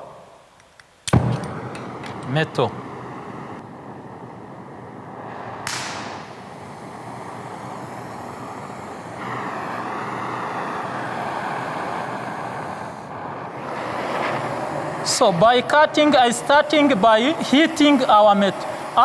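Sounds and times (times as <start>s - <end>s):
gas hissing: 0.0s - 19.0s
torch flame rushing: 0.9s - 19.0s
torch igniting pop: 1.0s - 3.6s, 5.3s - 7.3s.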